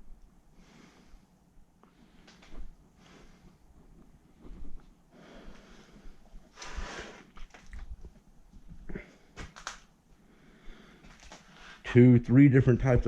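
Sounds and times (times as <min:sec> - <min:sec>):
man breathing heavily: 0:00.5 - 0:07.5, 0:10.2 - 0:11.8.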